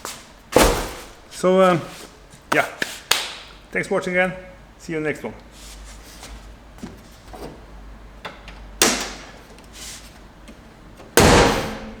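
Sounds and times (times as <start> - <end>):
sudden thumps: 11.2 - 12.0.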